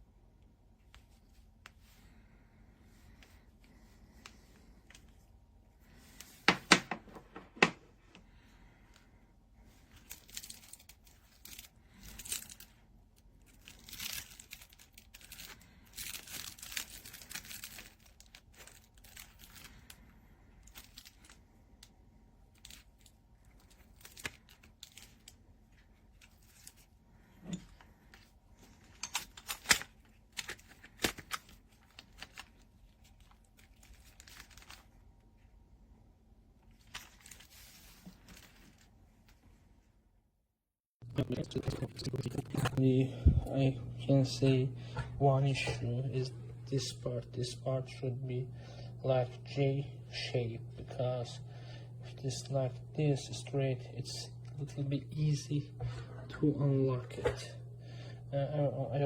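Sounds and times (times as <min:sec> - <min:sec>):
rustling packaging: 0:09.8 - 0:20.0, 0:28.0 - 0:35.1, 0:36.6 - 0:39.4.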